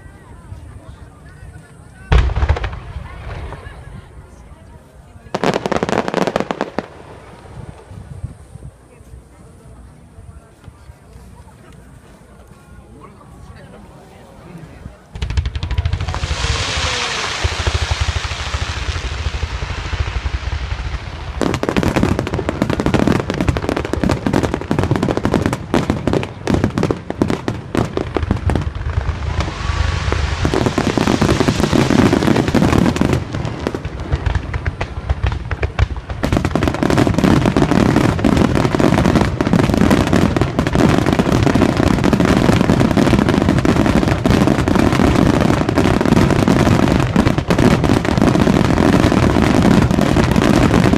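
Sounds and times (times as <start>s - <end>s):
fireworks bursting and crackling: 0.0s - 12.5s, 13.2s - 50.9s.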